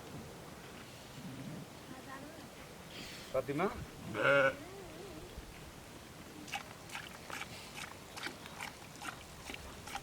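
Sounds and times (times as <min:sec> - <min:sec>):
sheep bleating: 0:04.1 - 0:04.6
sheep chewing with crunching clicks: 0:06.4 - 0:10.0.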